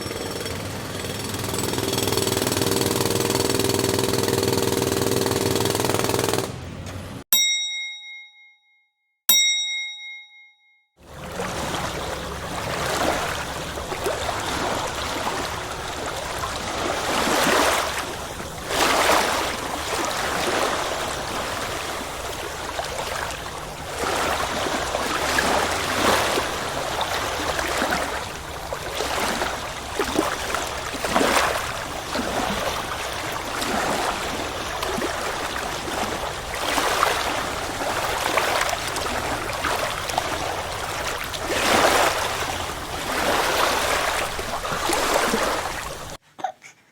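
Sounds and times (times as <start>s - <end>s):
ocean waves breaking: 0.0s - 6.7s, 11.0s - 46.2s.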